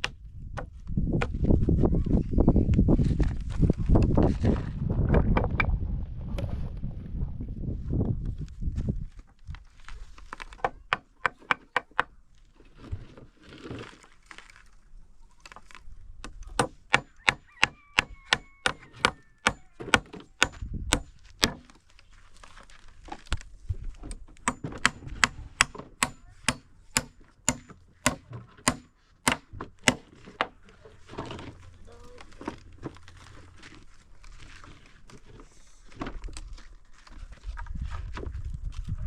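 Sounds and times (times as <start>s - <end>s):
hammering on wood: 16.5s - 21.6s, 24.4s - 30.5s.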